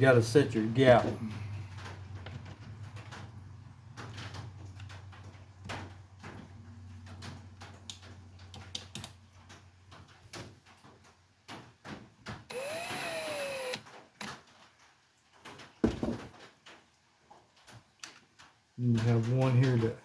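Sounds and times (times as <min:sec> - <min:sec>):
tools and parts clicking: 0:12.5 - 0:14.4.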